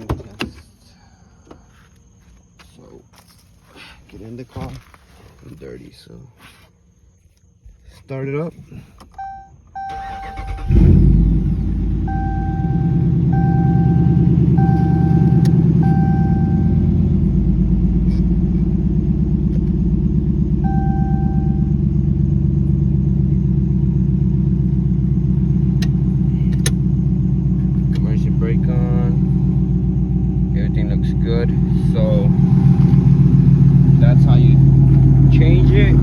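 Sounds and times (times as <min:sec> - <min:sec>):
car engine starting and idling: 0:09.0 - 0:36.0
dashboard warning chime: 0:09.2 - 0:10.6, 0:12.1 - 0:16.9, 0:20.6 - 0:21.8.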